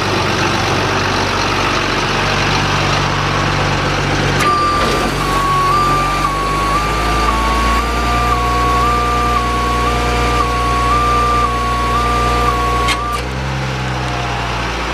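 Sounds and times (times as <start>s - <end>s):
diesel truck engine running: 0.0s - 14.9s
alarm switch click: 4.4s - 13.4s
two-tone warning alarm warble: 4.4s - 13.4s.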